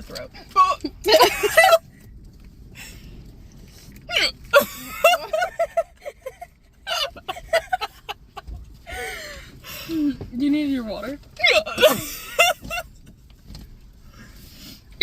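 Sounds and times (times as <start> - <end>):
person hiccuping: 11.4 - 12.1.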